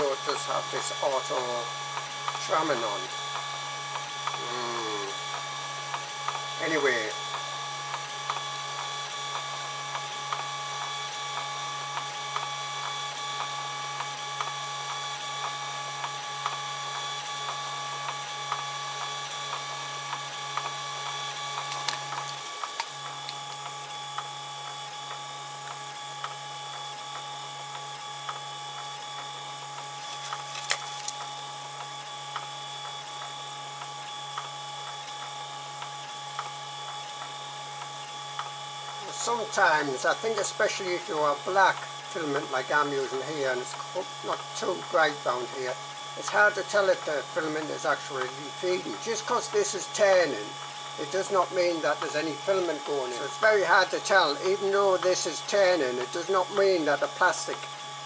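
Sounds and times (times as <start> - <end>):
printer stepper motors whining: 0.0 - 58.0
faint regular ticks: 21.5 - 23.7, 30.0 - 31.4.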